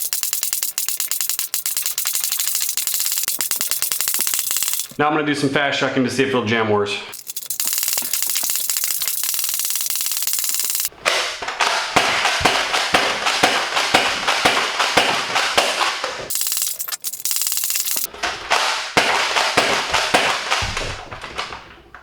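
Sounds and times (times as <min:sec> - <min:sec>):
toy blaster cocked and fired: 0:07.2 - 0:21.6.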